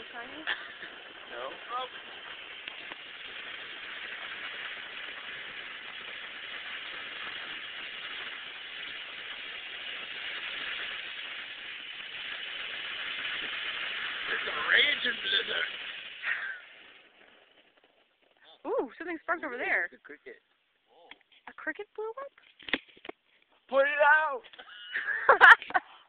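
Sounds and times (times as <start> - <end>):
firework fountain hissing sparks: 0.0 - 26.0.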